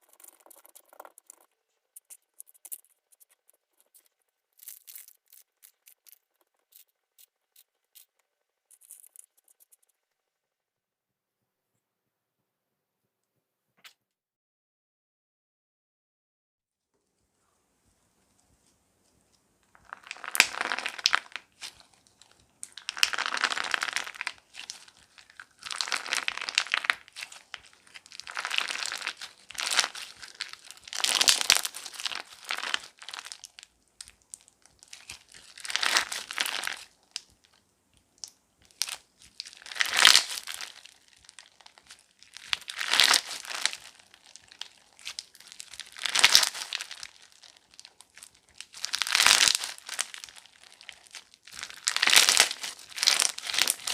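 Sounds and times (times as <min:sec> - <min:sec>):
slime squeezed crackling: 0:00.0 - 0:09.7, 0:19.8 - 0:37.6, 0:38.2 - 0:53.9.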